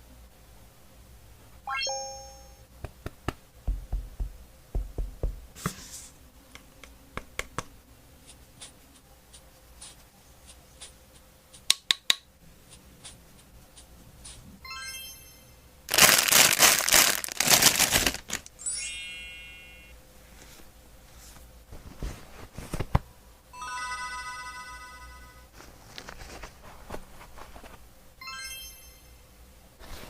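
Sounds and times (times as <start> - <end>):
ringing chime tone: 1.7 - 2.6, 14.6 - 15.6, 18.6 - 20.0, 23.6 - 25.4, 28.2 - 29.2
rising chime run: 1.7 - 2.6, 14.6 - 15.6, 18.6 - 19.9, 23.6 - 25.4, 28.2 - 29.1
loud crinkling: 15.9 - 18.5.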